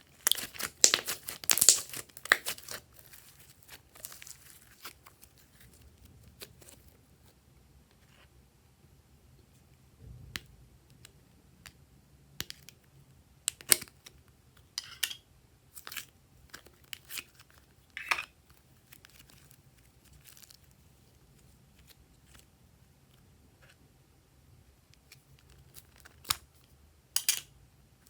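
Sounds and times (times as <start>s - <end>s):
slime sticky clicks and pops: 0.2s - 2.7s.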